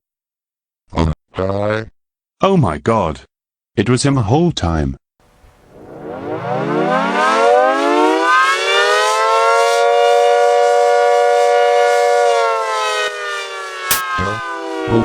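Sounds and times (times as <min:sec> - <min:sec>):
siren wailing: 0:05.6 - 0:15.0.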